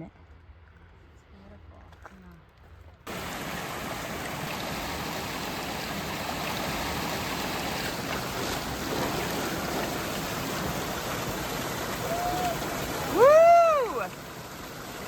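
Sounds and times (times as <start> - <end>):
waterfall pouring: 3.1 - 15.0.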